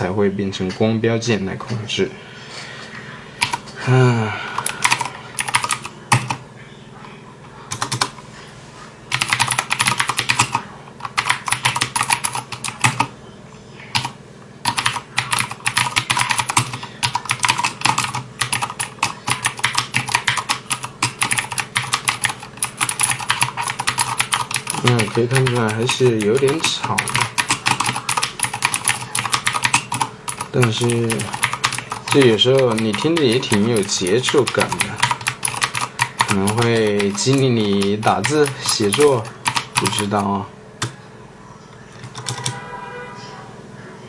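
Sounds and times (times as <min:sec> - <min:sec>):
clicky mechanical keyboard typing: 0:03.4 - 0:03.6, 0:04.6 - 0:06.4, 0:07.7 - 0:08.1, 0:09.1 - 0:13.1, 0:13.9 - 0:40.9, 0:42.0 - 0:42.6.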